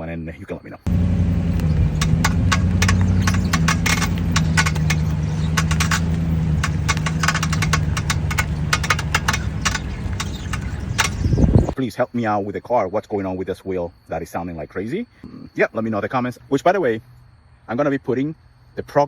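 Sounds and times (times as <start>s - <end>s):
sharp clicks and knocks from wheel: 0.9s - 11.8s
steady low hum: 0.9s - 11.8s.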